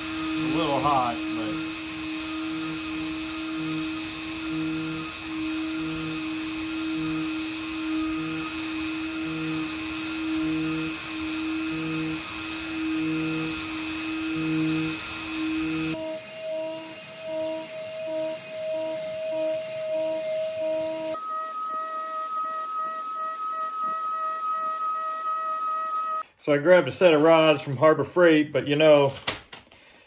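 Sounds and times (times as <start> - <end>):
hot air gun hissing: 0.0 - 21.2
motor whine: 0.0 - 26.2.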